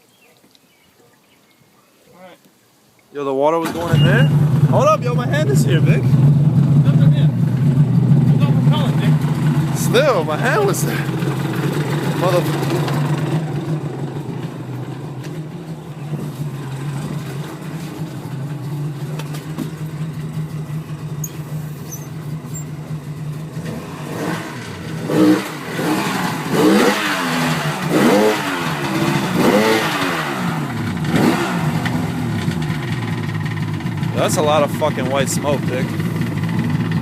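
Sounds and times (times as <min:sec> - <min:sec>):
two-stroke engine idling and revving: 0:03.7 - 0:37.0.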